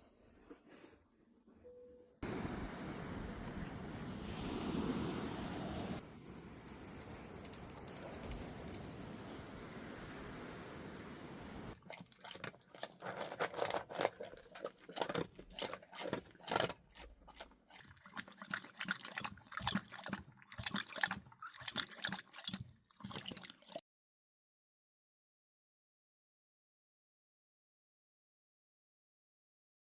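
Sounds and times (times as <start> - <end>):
dog lapping water: 11.8 - 23.8.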